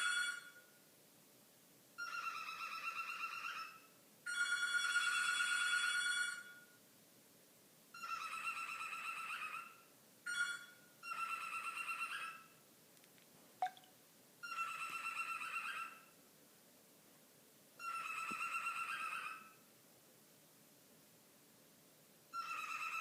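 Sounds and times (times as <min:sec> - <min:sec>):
bird mimicking telephone ringtone: 0:00.0 - 0:00.6, 0:02.0 - 0:06.6, 0:08.0 - 0:09.7, 0:10.3 - 0:12.5, 0:13.6 - 0:16.0, 0:17.8 - 0:19.6, 0:22.4 - 0:23.0.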